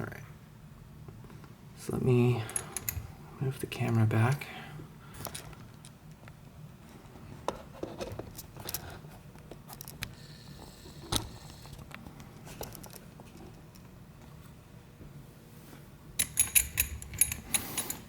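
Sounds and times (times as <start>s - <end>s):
small metal clicks of lock parts: 2.5s - 3.0s, 16.2s - 18.0s.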